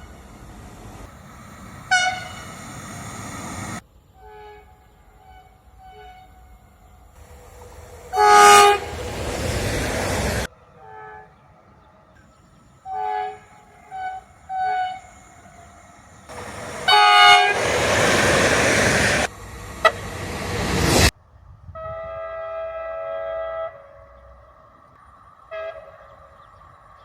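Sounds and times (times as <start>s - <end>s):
train rushing past: 0.0s - 11.2s, 12.2s - 21.2s
train horn blasts: 1.9s - 2.6s, 4.2s - 7.1s, 8.0s - 9.6s, 10.6s - 11.9s, 12.8s - 18.3s, 21.7s - 24.8s, 25.5s - 26.4s.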